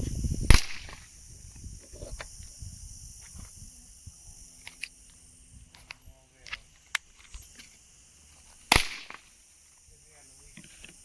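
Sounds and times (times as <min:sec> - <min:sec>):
steady high hiss: 0:00.0 - 0:11.0
pistol shot: 0:00.5 - 0:01.0, 0:08.7 - 0:09.3.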